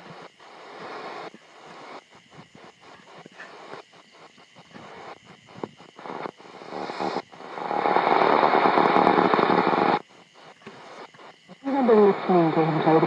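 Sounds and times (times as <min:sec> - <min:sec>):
radio receiver static: 0:00.0 - 0:13.0
radio broadcast voice: 0:11.6 - 0:13.0.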